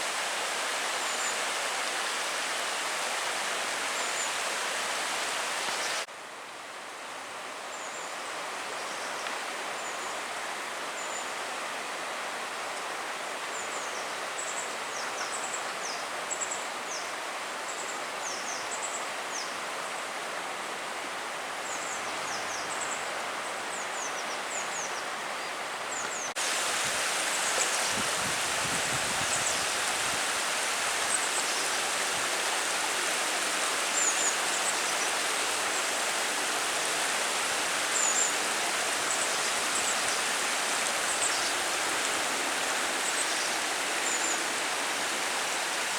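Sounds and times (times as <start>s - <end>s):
flooded river rushing: 26.3s - 45.9s.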